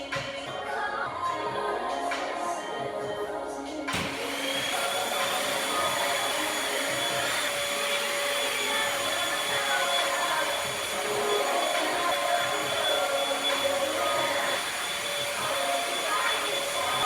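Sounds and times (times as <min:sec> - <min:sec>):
vacuum cleaner motor whine: 0:03.9 - 0:17.0.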